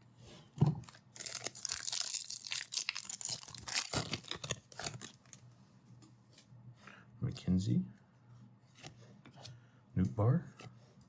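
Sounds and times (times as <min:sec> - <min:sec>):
wrapper tearing and crinkling: 0:00.8 - 0:05.4.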